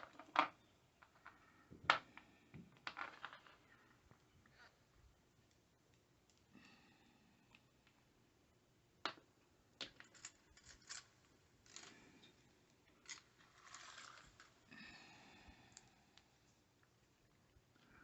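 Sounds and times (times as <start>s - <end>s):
small objects scraping and rustling: 10.0s - 14.7s.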